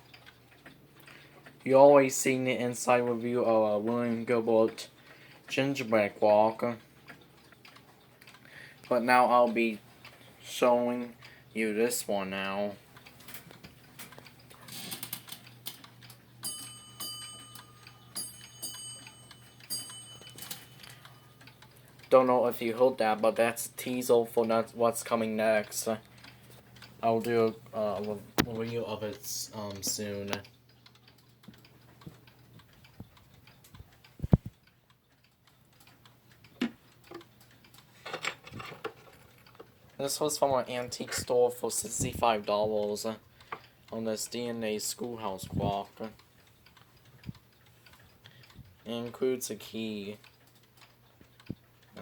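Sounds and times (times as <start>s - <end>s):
clock ticking: 0.0s - 52.0s
clock chime bell-like notes: 16.4s - 21.5s.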